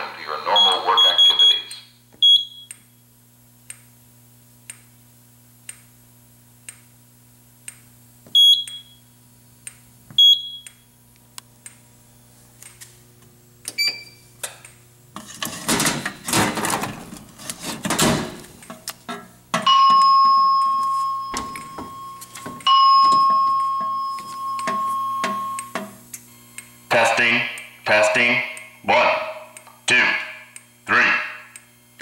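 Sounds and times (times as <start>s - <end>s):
high electronic beeps: 19.7s - 25.7s.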